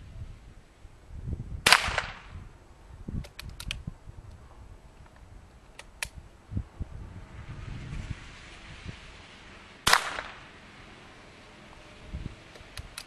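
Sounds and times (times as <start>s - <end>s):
rifle shot: 1.6s - 2.3s, 9.8s - 10.4s
metallic clicks of rifle lever: 3.2s - 3.8s, 5.7s - 6.2s.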